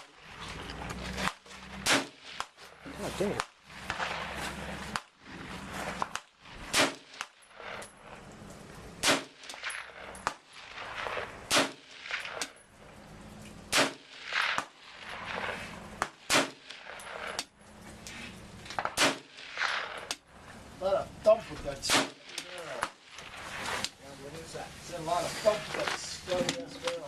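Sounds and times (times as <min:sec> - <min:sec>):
rifle shots: 0:01.2 - 0:07.9, 0:09.0 - 0:12.6, 0:13.7 - 0:17.4, 0:18.8 - 0:20.2, 0:21.8 - 0:23.8.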